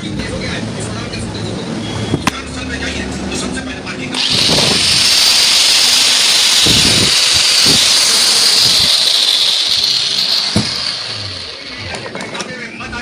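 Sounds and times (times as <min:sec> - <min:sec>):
angle grinder running: 0:04.2 - 0:12.3.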